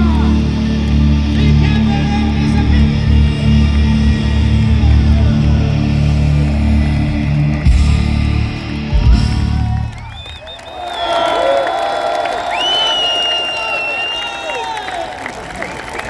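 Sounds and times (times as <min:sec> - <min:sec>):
hard rock band playing live: 0:00.0 - 0:10.2
crowd cheering and whistling: 0:00.0 - 0:16.0.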